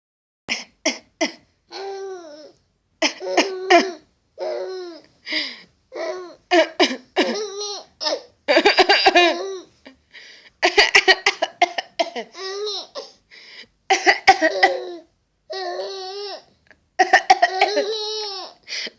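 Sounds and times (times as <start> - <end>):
person coughing: 3.0 - 4.0, 6.5 - 7.4, 8.5 - 9.4, 10.6 - 12.4, 13.9 - 14.9, 17.0 - 17.9
small child laughing: 17.4 - 18.7.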